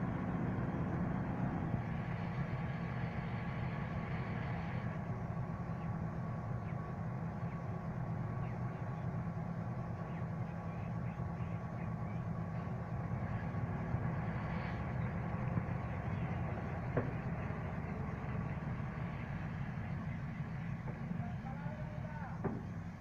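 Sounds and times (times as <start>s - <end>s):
heavy diesel engine running: 0.0s - 23.0s
faint knock: 22.4s - 22.9s.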